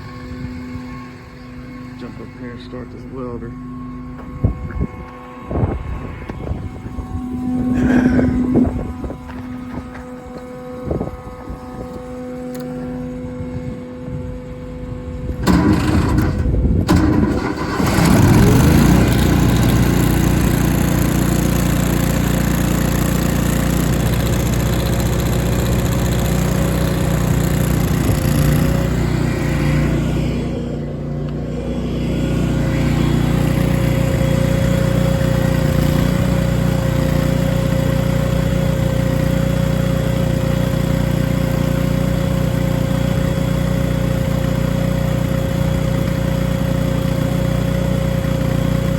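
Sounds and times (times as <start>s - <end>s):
constant whine: 0.0s - 48.9s
welder engine cranking and running: 15.3s - 48.9s.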